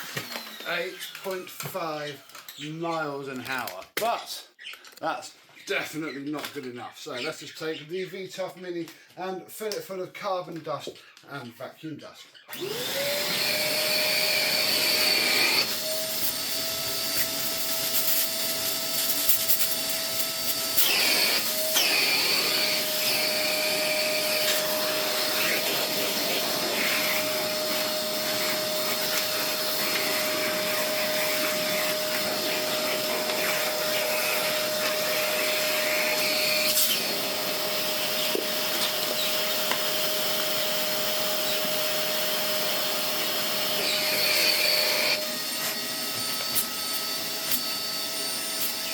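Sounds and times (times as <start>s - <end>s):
vacuum cleaner running: 0.0s - 1.4s, 12.5s - 48.9s.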